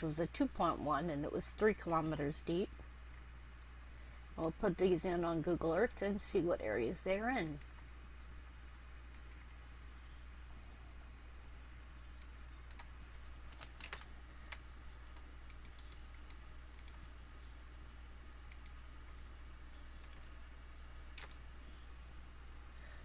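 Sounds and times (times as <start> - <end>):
faint low hum: 0.0 - 23.0
keyboard and mouse clicks: 9.1 - 9.5, 13.5 - 17.0, 18.5 - 18.8, 21.1 - 21.4.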